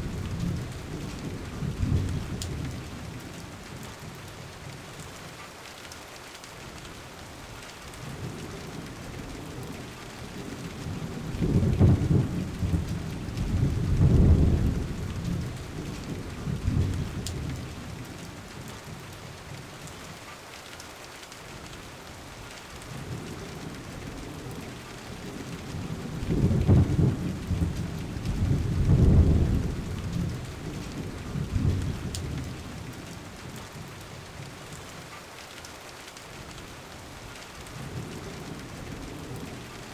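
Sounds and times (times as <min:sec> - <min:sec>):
steady rain: 0:00.0 - 0:39.9
thunder rumbling: 0:10.5 - 0:18.0, 0:25.2 - 0:33.0.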